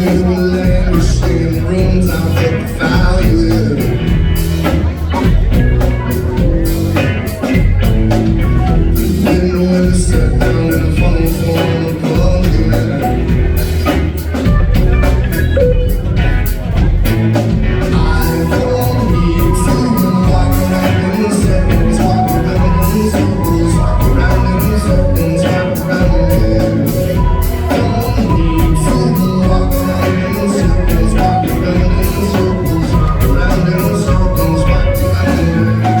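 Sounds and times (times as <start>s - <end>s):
live rock band playing: 0.0s - 36.0s
steady drum beat: 0.0s - 36.0s
singing: 17.8s - 36.0s.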